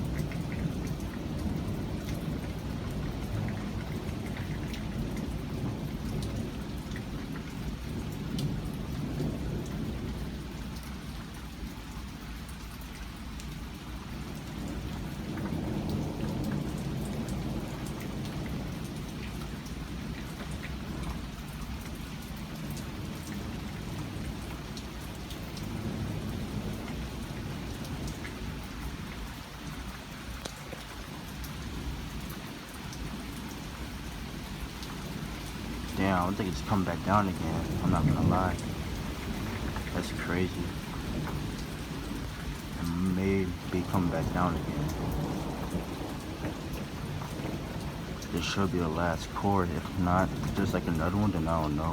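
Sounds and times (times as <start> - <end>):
heavy rain pouring: 0.0 - 51.9
thunder rumbling: 34.4 - 51.9.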